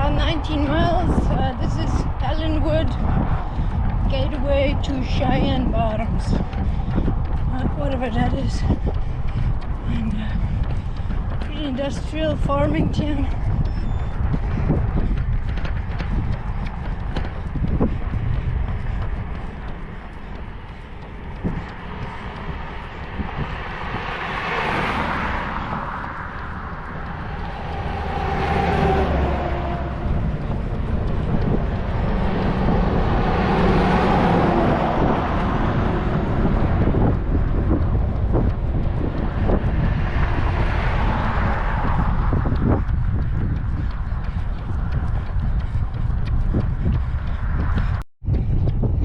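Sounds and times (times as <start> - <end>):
faint running footsteps: 0.0 - 49.0
low wind rumble on microphone: 0.0 - 49.0
vehicles passing on highway: 0.0 - 49.0.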